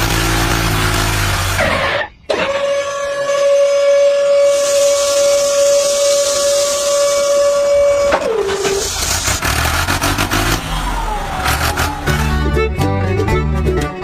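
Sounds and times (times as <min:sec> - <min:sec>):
steady whistle-like tone: 0:02.1 - 0:08.8
hiss: 0:04.4 - 0:07.8, 0:08.5 - 0:10.6.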